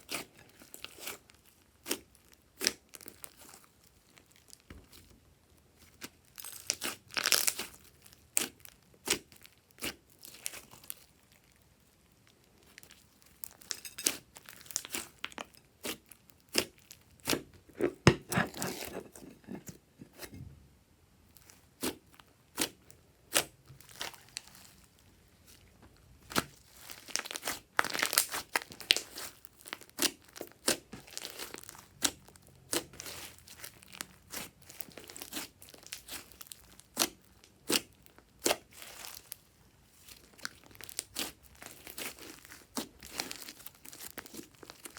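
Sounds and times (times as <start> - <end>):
slime sticky pops and crackling: 26.3 - 39.3.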